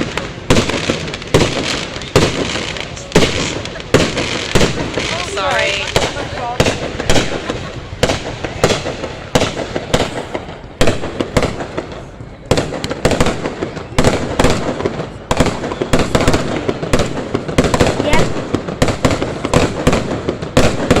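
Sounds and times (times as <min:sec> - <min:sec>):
fireworks bangs and pops: 0:00.0 - 0:21.0.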